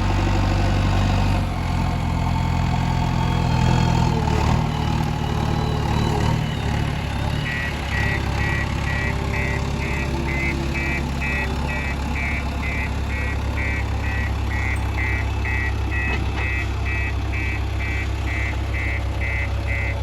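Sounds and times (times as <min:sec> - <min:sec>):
diesel engine running: 0:00.0 - 0:20.0
electronic beeping: 0:07.5 - 0:20.0.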